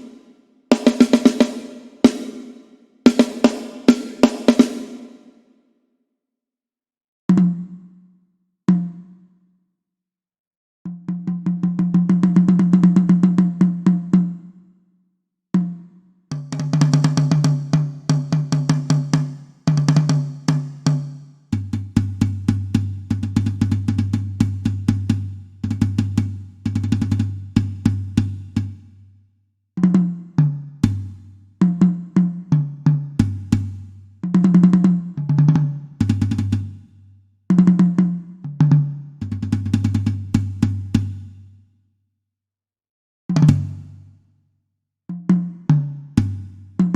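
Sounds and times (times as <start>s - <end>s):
drum rolls on toms: 0.0s - 5.2s.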